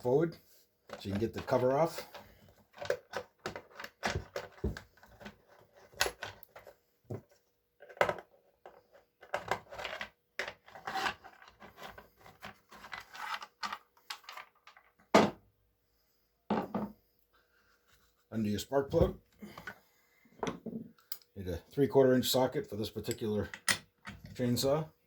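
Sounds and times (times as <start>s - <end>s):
plastic cover clicks and scraping: 0.9s - 6.8s.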